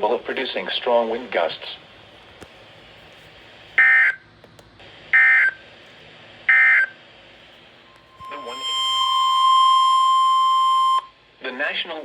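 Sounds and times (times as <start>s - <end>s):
two-tone digital data bursts: 8.1s - 11.1s.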